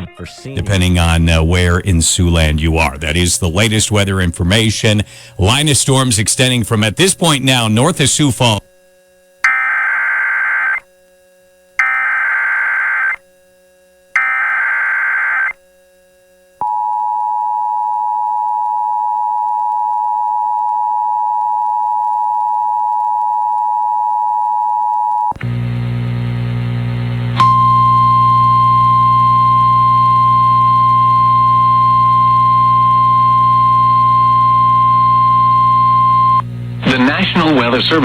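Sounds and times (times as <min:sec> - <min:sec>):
buzzing hum: 0:00.5 - 0:17.0, 0:25.3 - 0:38.0.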